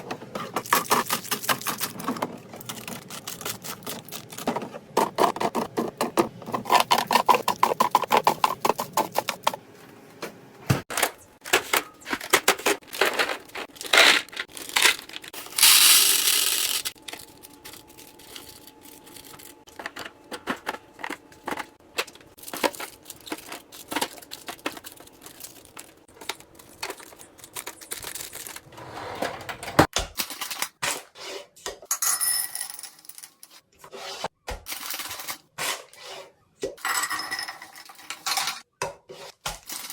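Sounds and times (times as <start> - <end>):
packaging clicks taps and rustles: 10.9 - 28.7.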